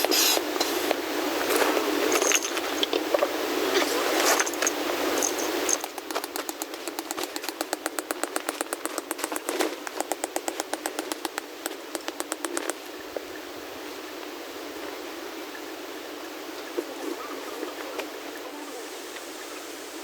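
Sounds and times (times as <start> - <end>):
rapid even clicking: 4.6 - 12.8.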